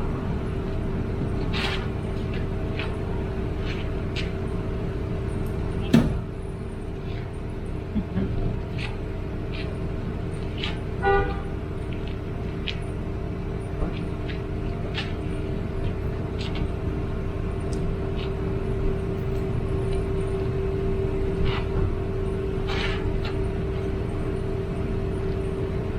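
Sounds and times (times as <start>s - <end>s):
road traffic hum: 0.0s - 25.9s
short car horn beep: 11.0s - 11.5s.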